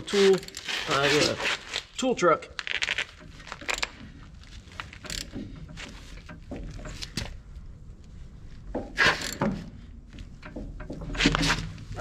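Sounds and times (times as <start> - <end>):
metal tools clicking and knocking: 4.8 - 7.4.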